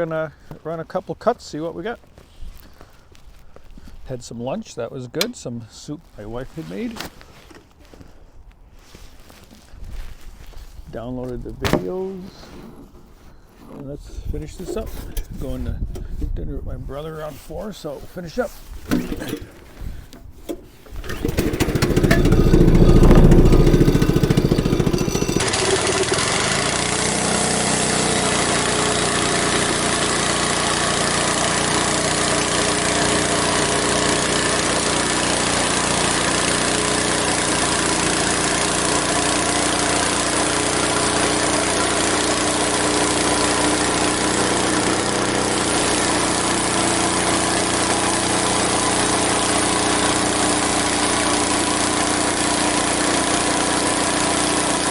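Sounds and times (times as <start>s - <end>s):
sawmill engine revving: 18.9s - 54.9s.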